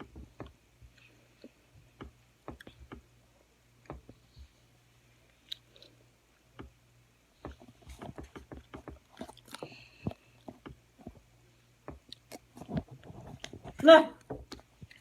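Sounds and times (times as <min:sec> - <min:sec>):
faint steady hum: 0:00.0 - 0:15.0
wet chewing clicks and smacks: 0:07.5 - 0:11.2, 0:12.0 - 0:13.6.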